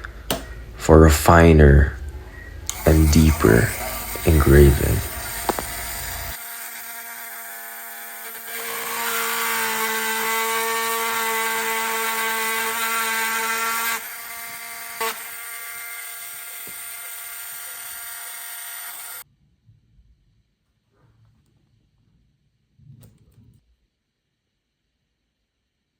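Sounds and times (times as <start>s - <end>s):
rotary tool whining: 2.0s - 19.2s.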